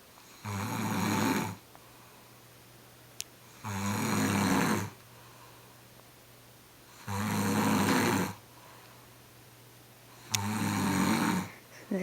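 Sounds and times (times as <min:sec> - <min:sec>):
man snoring loudly: 0:00.3 - 0:01.6, 0:03.6 - 0:05.0, 0:07.0 - 0:08.4, 0:10.2 - 0:11.5
quiet breathing: 0:01.5 - 0:02.5, 0:03.4 - 0:06.0, 0:06.8 - 0:09.4, 0:10.0 - 0:12.0.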